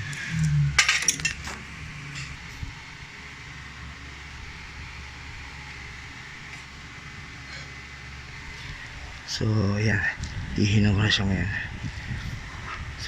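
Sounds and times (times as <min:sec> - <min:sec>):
mechanical hum: 0:00.0 - 0:13.0
metal parts clinking: 0:00.8 - 0:01.6.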